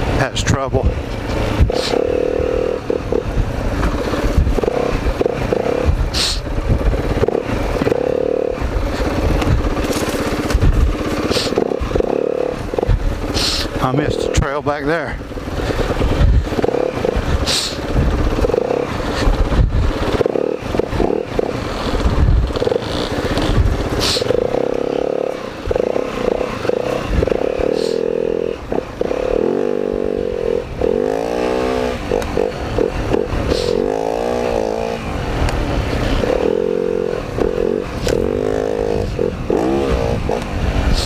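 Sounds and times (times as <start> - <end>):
dirt bike engine revving: 0.0 - 41.0
clattering and scraping knocks: 9.0 - 10.9.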